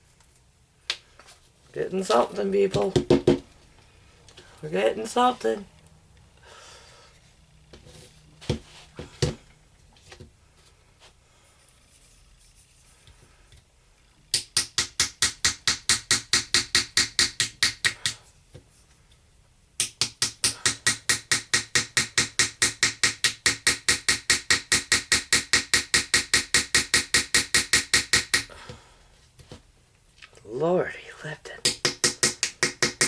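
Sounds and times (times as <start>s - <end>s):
hammer tapping a chisel: 14.3s - 18.2s, 19.8s - 28.6s, 31.6s - 33.0s.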